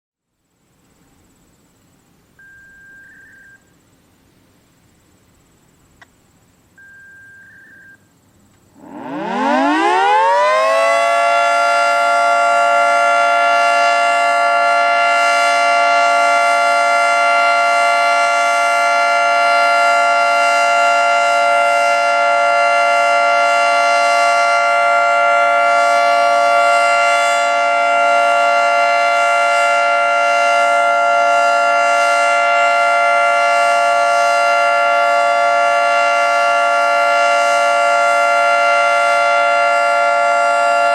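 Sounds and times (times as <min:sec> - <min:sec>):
two-tone warning siren: 0:08.7 - 0:40.9.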